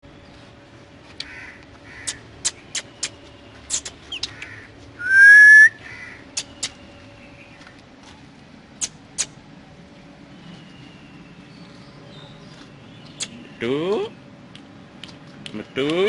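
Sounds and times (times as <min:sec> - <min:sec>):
loud rising whistle: 0:05.0 - 0:05.8.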